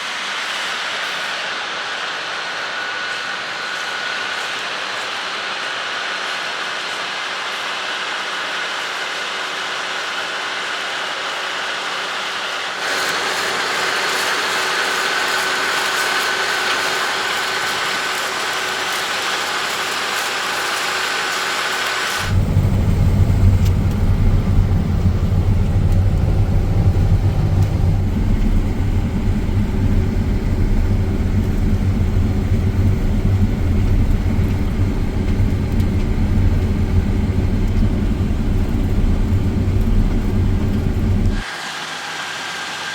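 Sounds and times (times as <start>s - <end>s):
machinery hiss with high whine: 0.0s - 42.9s
deep engine rumble: 22.2s - 41.4s.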